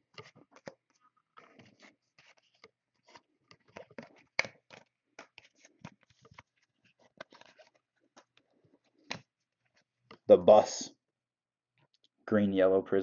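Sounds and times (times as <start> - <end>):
trading cards rustling and clicking: 0.0 - 10.3.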